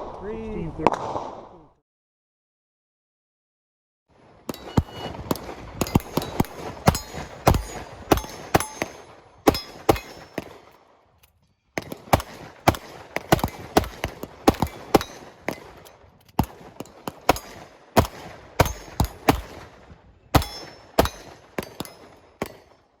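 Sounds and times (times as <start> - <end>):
handgun shots: 4.5 - 10.7, 11.8 - 19.6, 20.3 - 22.7.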